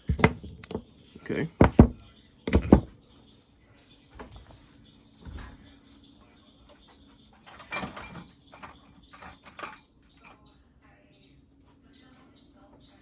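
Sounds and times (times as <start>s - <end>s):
metal tools clinking and knocking: 0.0s - 1.0s, 1.6s - 3.0s, 4.0s - 5.4s, 7.4s - 10.4s.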